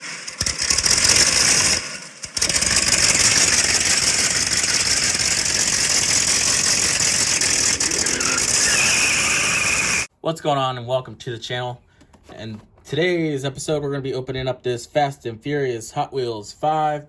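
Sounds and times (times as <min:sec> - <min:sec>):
car engine rattly idle: 0:00.3 - 0:08.7.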